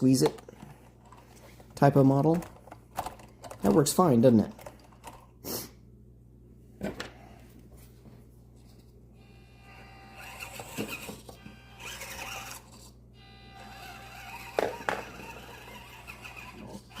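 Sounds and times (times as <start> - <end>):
plastic parts clicking: 2.3 - 3.9.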